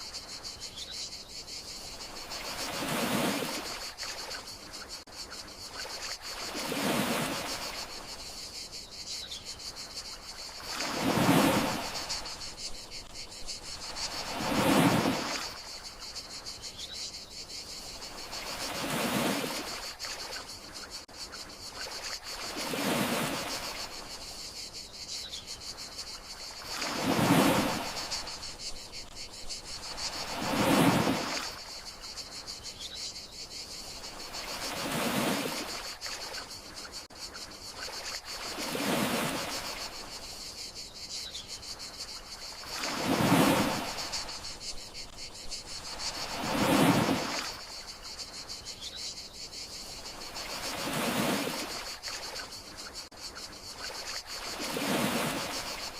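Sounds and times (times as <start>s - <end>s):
crickets chirping: 0.0s - 55.9s
gentle sea waves washing in: 1.7s - 8.4s, 9.8s - 16.5s, 17.8s - 21.1s, 21.7s - 24.4s, 25.9s - 32.2s, 33.8s - 37.0s, 37.7s - 40.5s, 42.1s - 48.4s, 49.8s - 53.1s, 53.7s - 55.9s.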